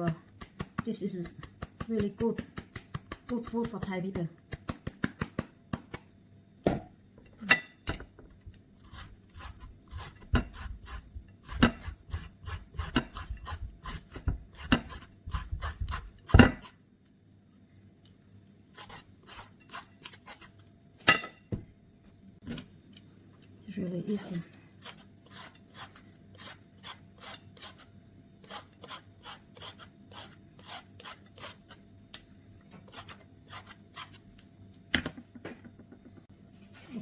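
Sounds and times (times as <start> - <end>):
papaya being shredded by hand: 0.0 - 6.1.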